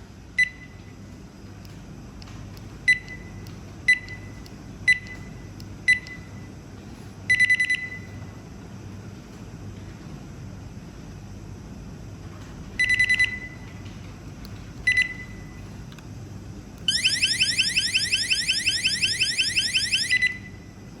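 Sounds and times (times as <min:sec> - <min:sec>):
door alarm beeping: 0:16.9 - 0:20.6
electronic alarm warble: 0:16.9 - 0:20.6.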